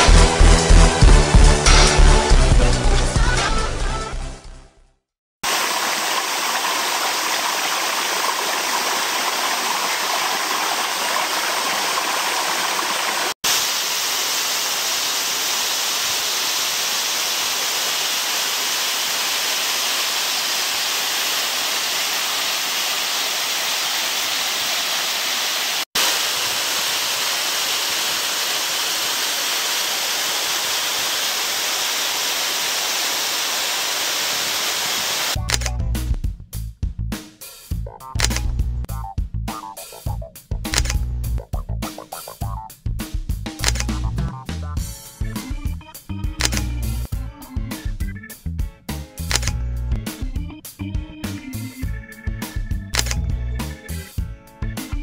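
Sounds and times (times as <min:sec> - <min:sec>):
waterfall rushing: 0:05.4 - 0:35.4.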